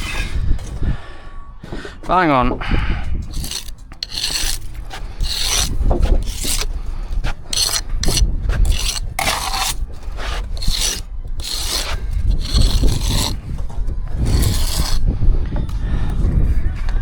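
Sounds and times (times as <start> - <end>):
hand tool scraping mortar: 0.0 - 0.8, 3.2 - 15.1.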